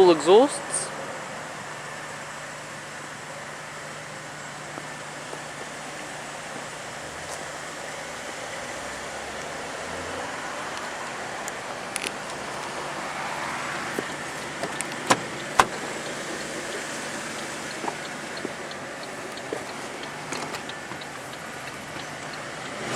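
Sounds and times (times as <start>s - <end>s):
background traffic noise: 0.0s - 22.9s
sharp clicks: 13.9s - 22.9s.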